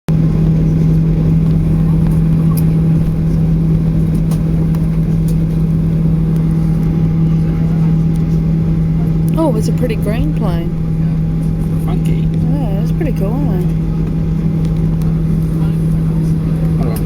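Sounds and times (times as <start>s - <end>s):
airliner cabin drone: 0.1s - 17.0s.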